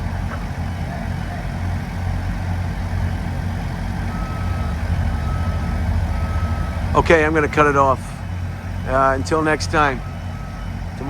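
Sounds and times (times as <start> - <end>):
heavy machinery engine drone: 0.0 - 11.0
reversing alarm beeping: 4.0 - 11.0.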